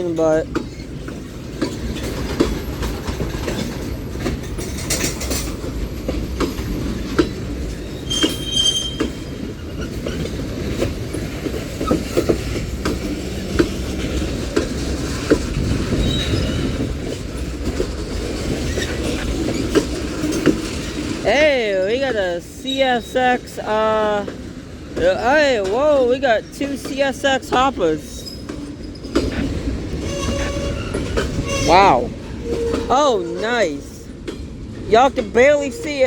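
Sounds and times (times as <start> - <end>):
freight train rumbling: 0.0 - 36.0
wheels clacking over rail joints: 0.0 - 36.0
high wheel squeal: 7.7 - 10.3, 16.0 - 16.8, 28.2 - 33.8.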